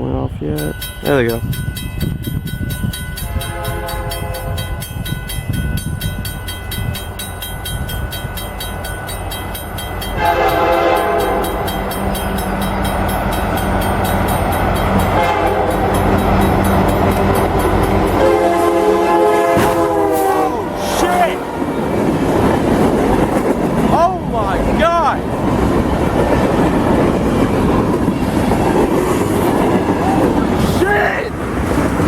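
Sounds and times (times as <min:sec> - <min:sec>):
locomotive rumble: 0:00.0 - 0:32.0
crossing signal bells ringing: 0:00.4 - 0:22.8
train air horn: 0:03.2 - 0:04.7, 0:10.2 - 0:11.7, 0:15.1 - 0:16.0, 0:18.1 - 0:21.6.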